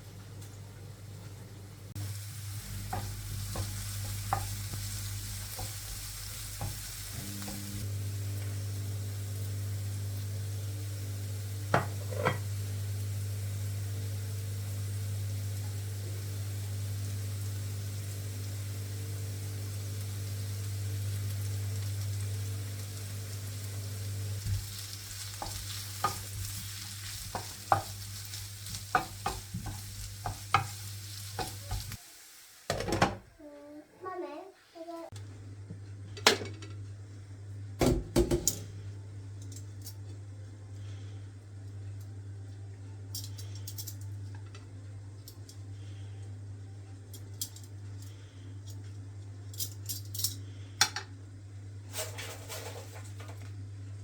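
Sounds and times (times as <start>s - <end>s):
steady low hum: 0.0s - 31.8s
food sizzling in a pan: 1.0s - 35.2s, 51.7s - 53.5s.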